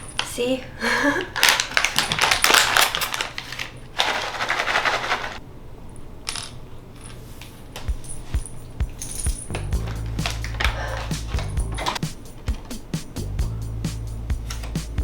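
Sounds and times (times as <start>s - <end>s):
cat treats rattling in container: 1.4s - 5.4s.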